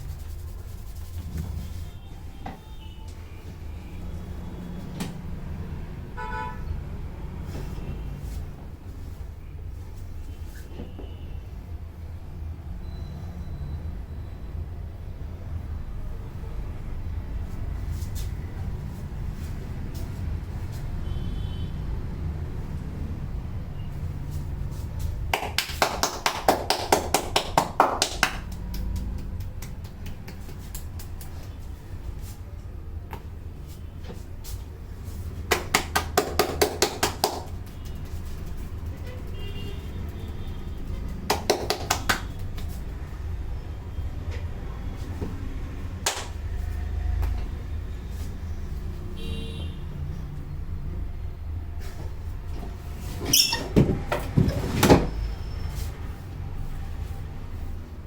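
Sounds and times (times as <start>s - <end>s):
hands tapping on head: 25.3s - 31.6s, 35.5s - 39.0s, 41.2s - 42.8s.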